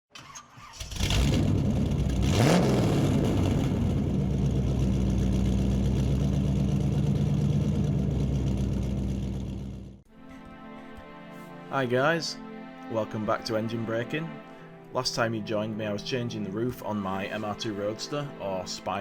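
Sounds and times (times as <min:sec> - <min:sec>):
car engine revving: 0:00.8 - 0:10.0.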